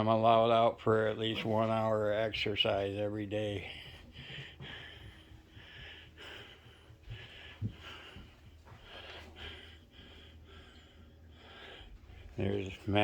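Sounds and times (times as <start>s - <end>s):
man breathing heavily: 3.0s - 13.0s.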